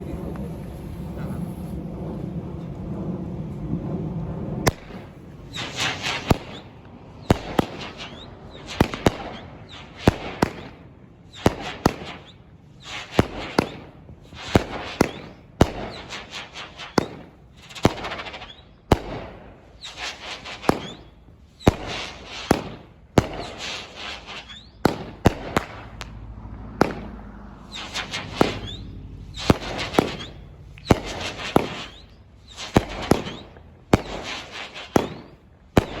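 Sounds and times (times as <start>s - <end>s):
low rumble: 0.0s - 10.0s, 24.8s - 33.9s
fireworks bangs: 0.0s - 36.0s
fireworks crackling fizz: 4.6s - 36.0s.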